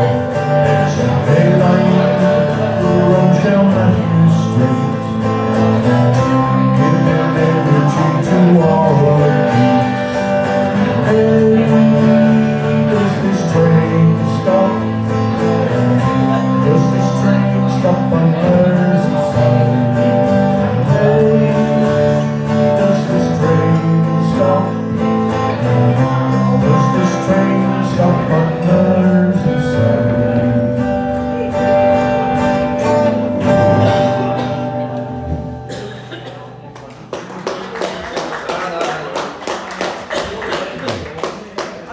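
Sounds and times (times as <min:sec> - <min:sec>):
strummed acoustic guitar: 0:00.0 - 0:41.3
acoustic folk music: 0:00.0 - 0:41.9.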